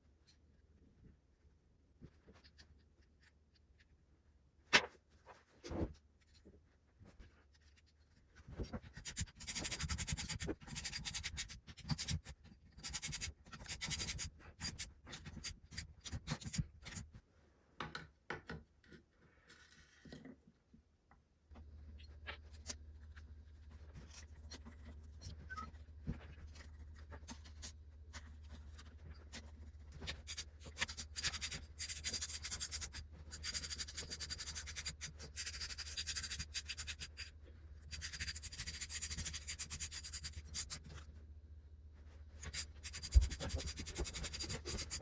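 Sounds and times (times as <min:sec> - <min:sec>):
tools clicking and scraping: 0:08.8 - 0:17.1, 0:26.6 - 0:41.1, 0:42.4 - 0:45.0.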